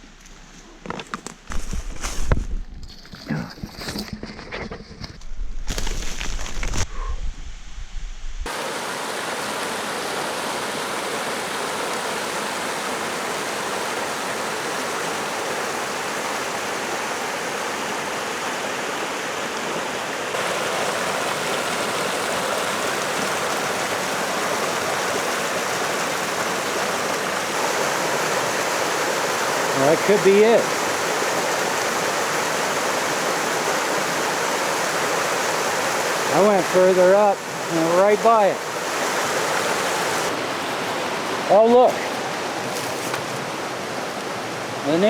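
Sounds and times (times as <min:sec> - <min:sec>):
low rumble: 0:05.1 - 0:08.5
creek flowing over rocks: 0:08.5 - 0:45.0.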